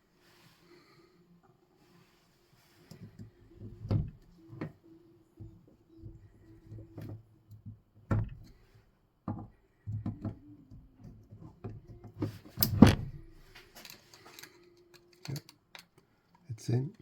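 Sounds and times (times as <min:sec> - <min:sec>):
small metallic clicks and knocks: 0:13.5 - 0:17.0.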